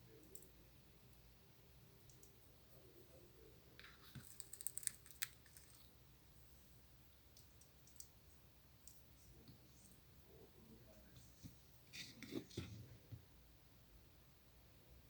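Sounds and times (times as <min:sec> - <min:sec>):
faint clicks: 0:02.1 - 0:02.4.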